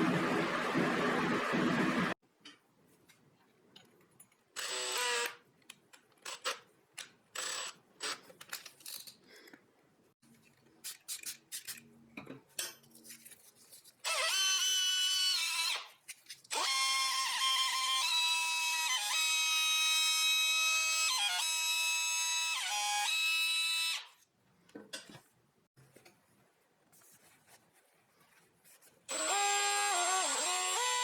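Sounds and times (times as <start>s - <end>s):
power drill bursts: 29.1s - 31.0s.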